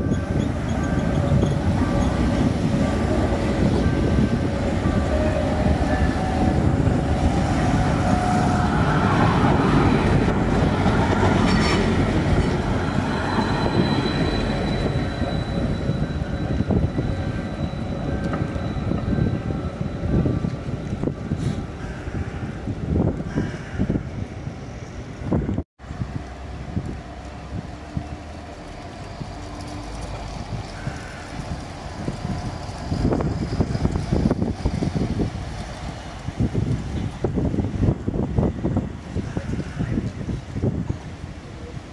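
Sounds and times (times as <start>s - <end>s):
wheels squealing: 0.0s - 21.6s, 26.8s - 36.7s
tram rumbling on rails: 0.0s - 41.9s.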